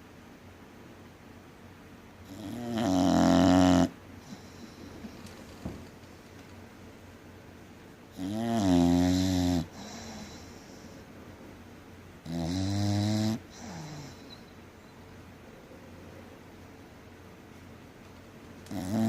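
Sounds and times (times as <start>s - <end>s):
dog snoring loudly: 2.2s - 4.4s, 8.1s - 10.5s, 12.2s - 14.2s, 18.7s - 19.0s
dog breathing softly: 9.7s - 11.1s.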